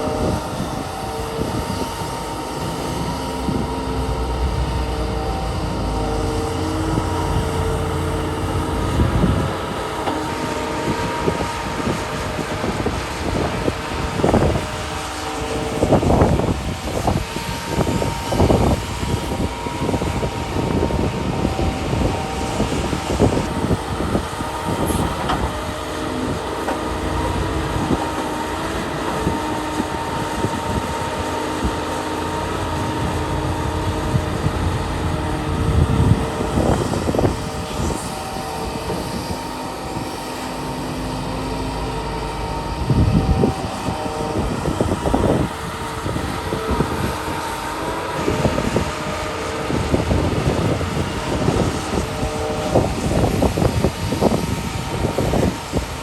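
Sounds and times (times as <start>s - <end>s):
diesel machinery running: 0.0s - 56.0s
droning tones: 0.0s - 56.0s.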